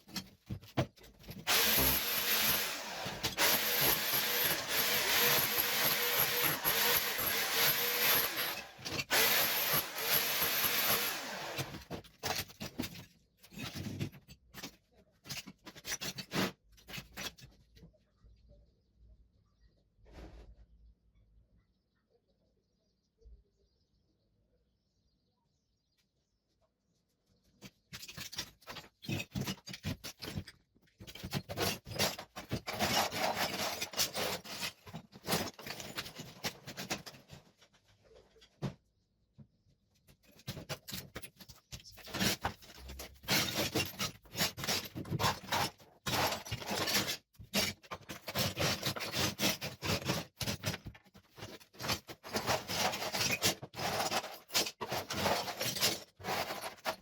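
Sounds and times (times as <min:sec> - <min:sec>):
hand tool scraping ceramic tile: 0:00.0 - 0:17.5, 0:28.0 - 0:37.3, 0:40.3 - 0:57.0
rubble clicks and rattles: 0:03.2 - 0:18.0, 0:27.5 - 0:38.9, 0:39.9 - 0:57.0.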